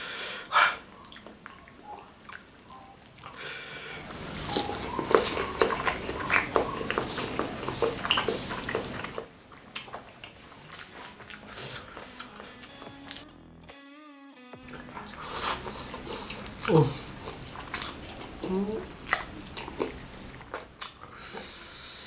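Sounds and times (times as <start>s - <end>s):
mouth clicks: 0.0s - 13.2s, 14.6s - 22.0s
wet chewing and smacking: 0.8s - 13.2s, 14.6s - 21.8s
slurping noodles: 3.3s - 13.2s, 14.8s - 22.0s.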